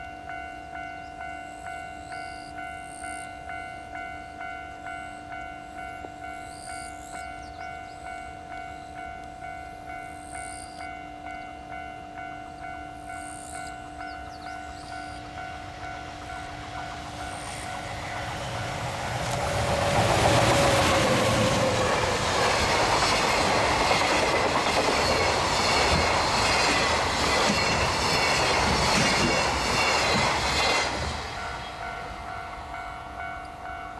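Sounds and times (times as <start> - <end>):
level-crossing alarm ringing: 0.1 - 33.9
locomotive tone dropping in pitch: 13.2 - 33.9
wagons clattering over rails: 15.5 - 31.8.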